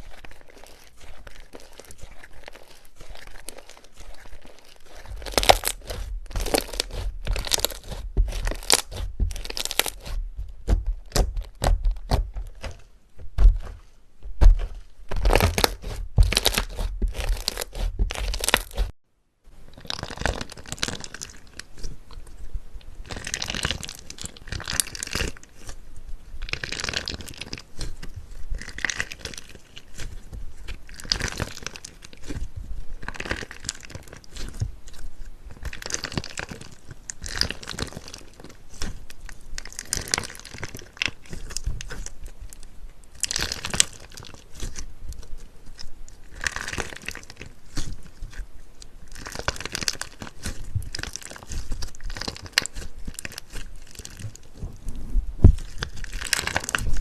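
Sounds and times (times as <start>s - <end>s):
slime squeezed by hand: 0.0s - 13.8s, 14.4s - 18.9s.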